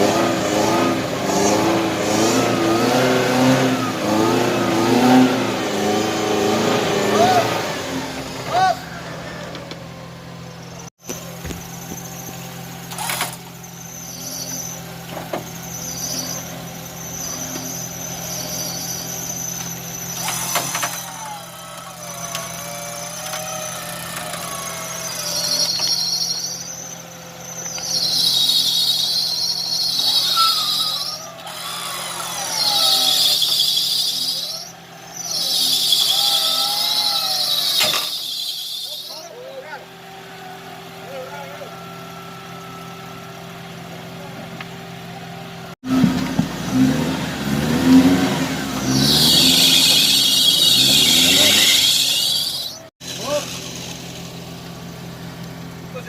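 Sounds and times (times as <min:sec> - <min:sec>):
engine idling: 0:07.2 - 0:46.8, 0:48.6 - 0:56.0
high-pitched shrill: 0:10.6 - 0:39.7, 0:48.7 - 0:53.4.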